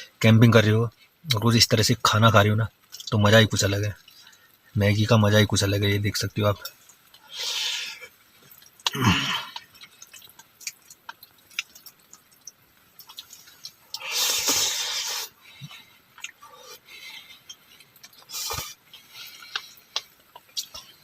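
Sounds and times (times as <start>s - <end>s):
chewing: 6.6s - 21.0s
slurping noodles: 13.2s - 15.4s.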